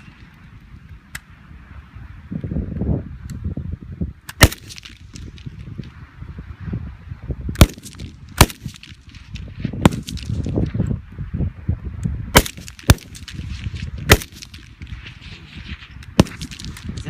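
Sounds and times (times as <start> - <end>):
loud gunshots: 4.4 - 4.9, 7.6 - 8.8, 12.4 - 13.2, 14.1 - 14.6, 16.2 - 16.6.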